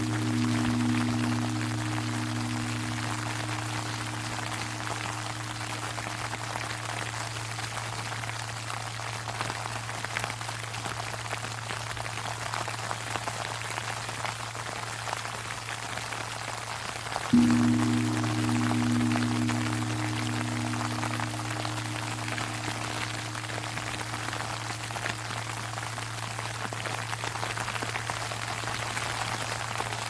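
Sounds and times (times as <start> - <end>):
temple bell hum: 0.0 - 9.3, 17.4 - 29.0.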